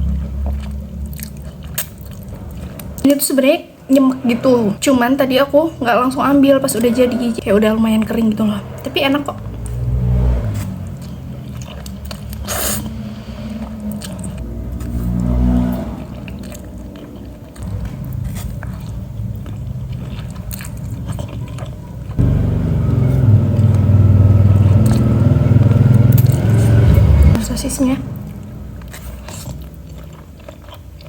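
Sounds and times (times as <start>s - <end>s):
biting and chewing food: 0.0s - 3.1s, 9.4s - 22.2s, 28.2s - 31.0s
low steady hum: 16.0s - 30.4s.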